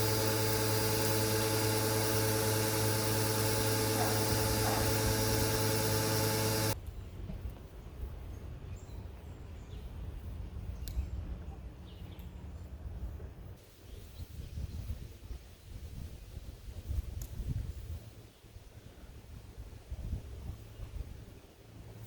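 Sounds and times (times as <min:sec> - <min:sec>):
birds chirping: 0:00.0 - 0:06.8
pressure washer running: 0:00.0 - 0:06.8.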